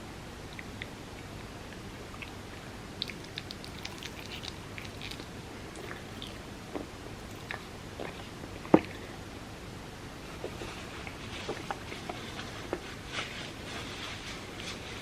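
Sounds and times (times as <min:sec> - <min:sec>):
chewing and biting dessert: 0:03.0 - 0:06.4, 0:07.2 - 0:09.0.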